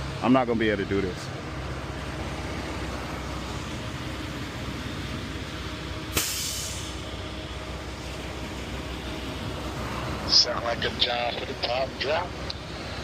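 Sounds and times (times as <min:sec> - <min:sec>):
diesel truck engine rumbling: 0:00.0 - 0:13.0
air brakes hissing: 0:06.1 - 0:07.0.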